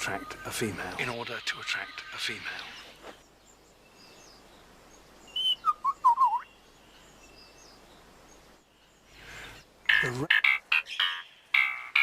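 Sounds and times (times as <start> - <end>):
lyrebird whistling song: 3.8 - 7.8.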